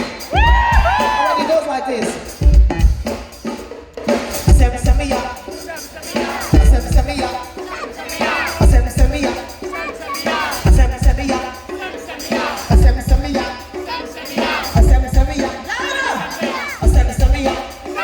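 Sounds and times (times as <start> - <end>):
live band playing funk: 0.0 - 18.0
person singing: 4.4 - 18.0.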